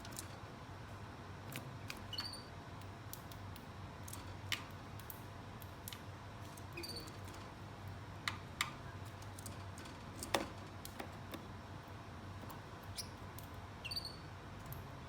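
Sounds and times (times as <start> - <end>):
light clicks and taps: 2.8 - 7.5.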